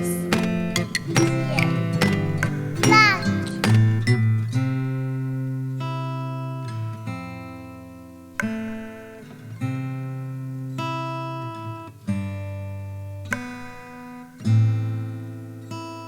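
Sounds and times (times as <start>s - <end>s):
acoustic guitar strumming chords: 0.0s - 16.0s.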